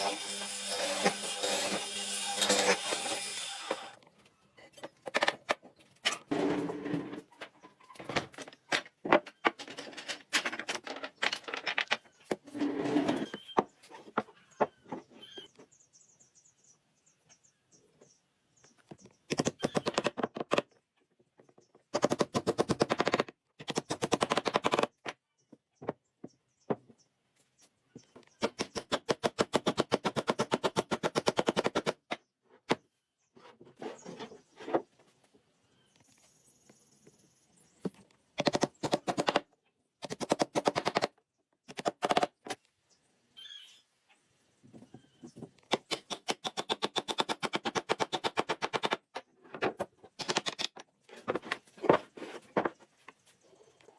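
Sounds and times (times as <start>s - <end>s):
power tool hammering: 0.0s - 4.0s.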